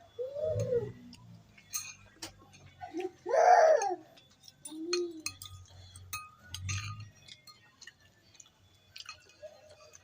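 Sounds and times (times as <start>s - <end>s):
cutlery clinking against bowl: 1.5s - 3.1s, 3.8s - 10.0s.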